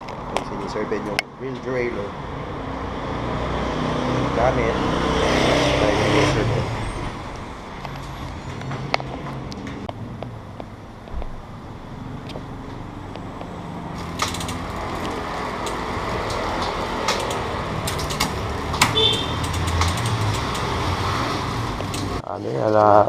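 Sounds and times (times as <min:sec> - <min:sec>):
road traffic: 0:00.0 - 0:23.0
sharp clicks and knocks: 0:07.8 - 0:11.4, 0:12.2 - 0:20.9, 0:21.7 - 0:22.2.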